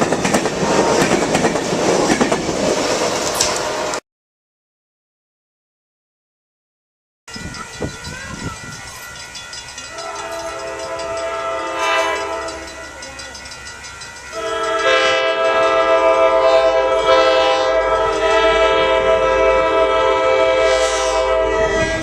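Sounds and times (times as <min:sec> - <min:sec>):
locomotive air horn chord: 0:09.9 - 0:12.8, 0:14.3 - 0:22.0.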